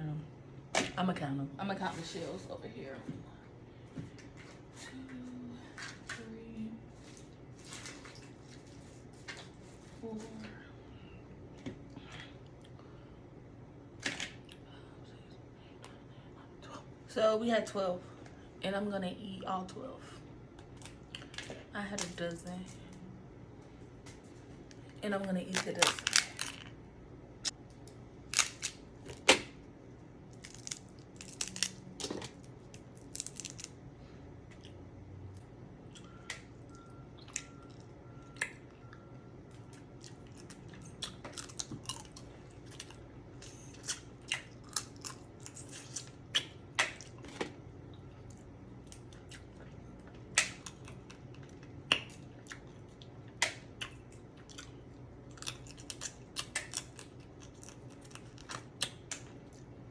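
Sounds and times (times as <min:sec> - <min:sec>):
crab shell cracking: 0:27.8 - 0:29.3, 0:30.3 - 0:33.8
chewing: 0:34.5 - 0:59.7.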